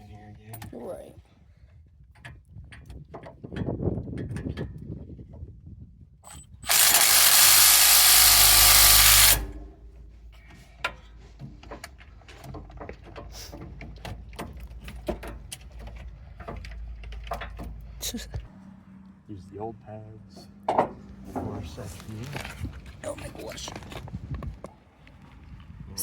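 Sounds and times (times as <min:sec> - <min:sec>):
power wrench tightening bolt: 0:06.3 - 0:09.7
tools and parts clicking: 0:06.3 - 0:09.7.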